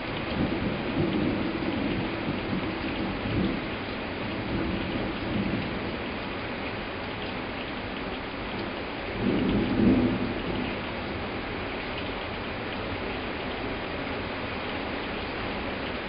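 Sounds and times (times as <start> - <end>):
pouring rain: 0.0 - 16.0
thunder rumble: 9.1 - 11.5.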